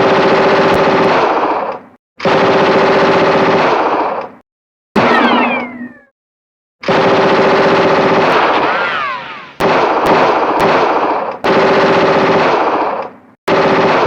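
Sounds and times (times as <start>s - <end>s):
machine gun automatic fire: 0.0s - 4.4s, 6.8s - 14.0s.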